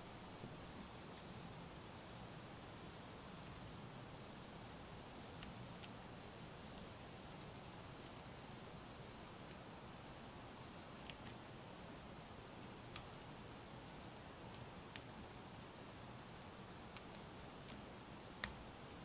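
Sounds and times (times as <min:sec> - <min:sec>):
furnace blower hum and hiss: 0:00.0 - 0:19.0
faint small clicks: 0:11.0 - 0:11.4, 0:16.9 - 0:17.8, 0:18.4 - 0:18.6.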